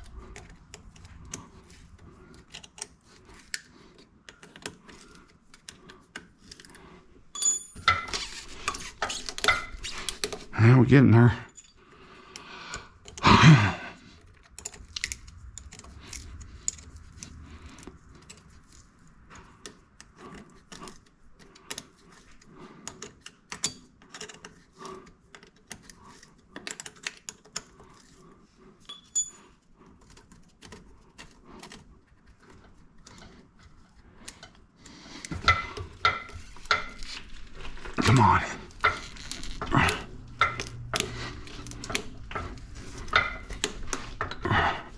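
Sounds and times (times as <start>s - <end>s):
metal tools clinking: 7.3s - 10.3s, 11.5s - 11.8s, 28.8s - 29.6s.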